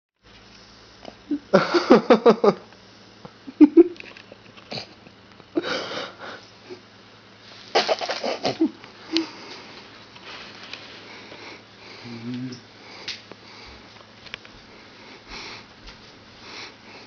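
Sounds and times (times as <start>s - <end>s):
person breathy wheezy vocal sounds: 11.9s - 12.5s.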